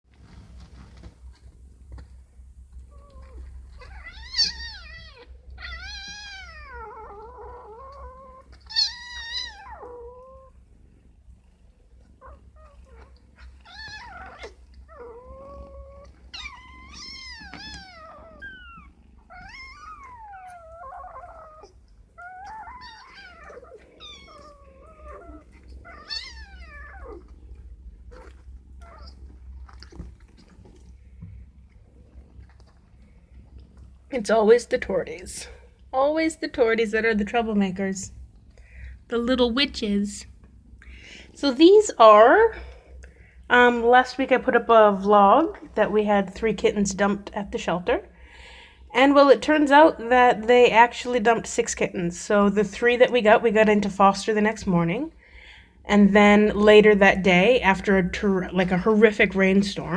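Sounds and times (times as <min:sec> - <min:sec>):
cats meowing: 0:02.8 - 0:10.6, 0:12.0 - 0:31.3.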